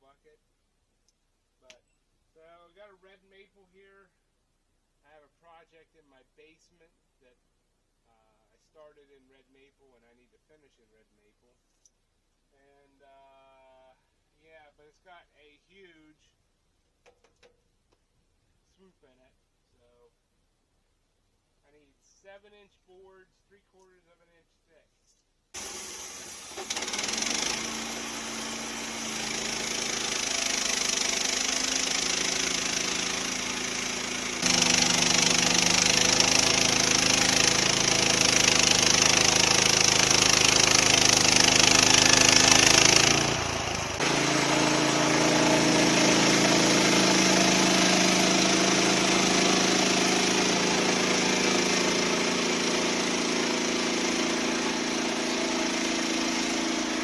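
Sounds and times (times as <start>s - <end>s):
saw blade hissing through log: 25.6s - 57.0s
sawmill engine running under load: 25.6s - 57.0s.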